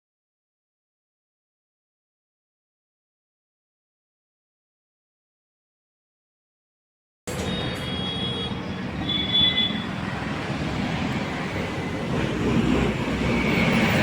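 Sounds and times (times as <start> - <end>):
road noise: 7.3 - 14.0
thin high whistling tone: 7.4 - 9.9.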